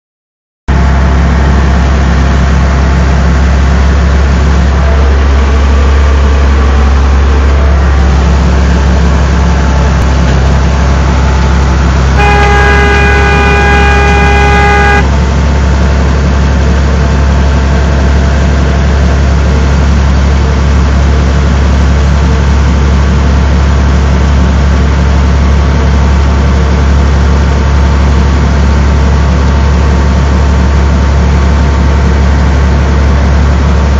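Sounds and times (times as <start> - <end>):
tractor engine humming: 0.7 - 33.9
horn-like tone: 9.5 - 15.3.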